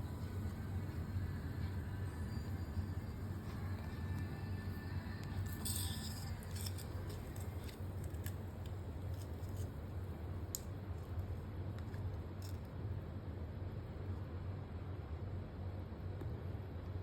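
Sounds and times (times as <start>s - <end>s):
low hum: 0.0s - 10.5s.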